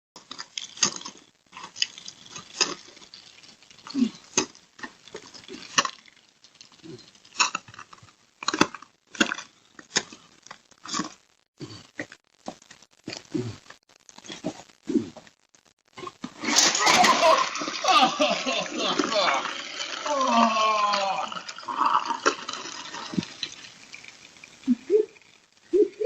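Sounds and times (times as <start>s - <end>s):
ice cracking: 0.2s - 11.2s, 16.0s - 25.6s.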